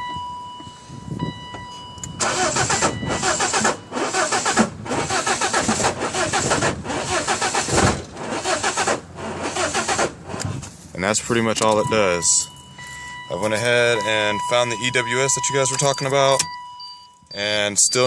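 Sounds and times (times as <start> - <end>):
electronic warning tone: 0.0 - 4.3, 11.8 - 18.0
engine cranking by starter motor: 2.0 - 10.7.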